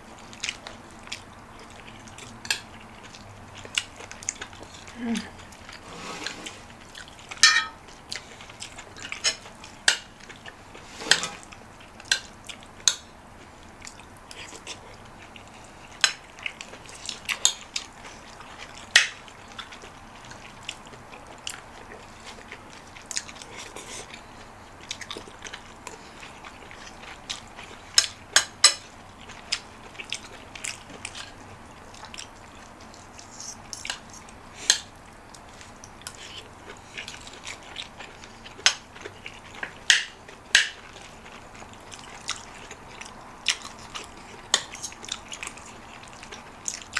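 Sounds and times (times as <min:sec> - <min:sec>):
chewing: 0:00.2 - 0:46.9
spoon clinking against bowl: 0:07.4 - 0:07.8.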